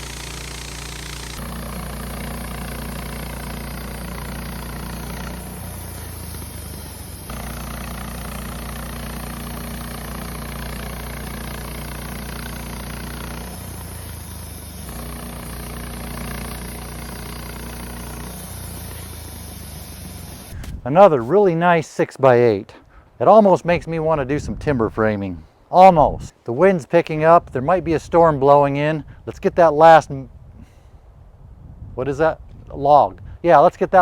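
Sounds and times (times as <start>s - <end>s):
sawmill engine running: 0.0s - 21.3s.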